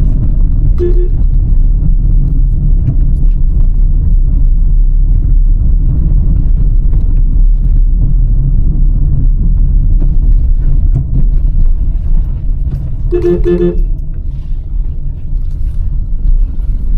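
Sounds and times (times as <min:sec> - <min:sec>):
car engine and road rumble: 0:00.0 - 0:16.9
short steady tone: 0:00.8 - 0:01.2, 0:13.1 - 0:14.0.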